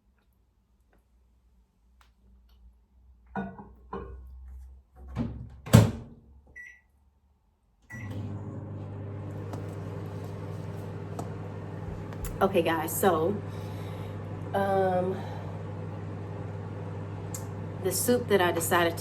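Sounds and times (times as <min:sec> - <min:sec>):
microwave beeps: 0:06.5 - 0:06.9, 0:07.9 - 0:09.4
microwave electrical hum: 0:07.8 - 0:19.0.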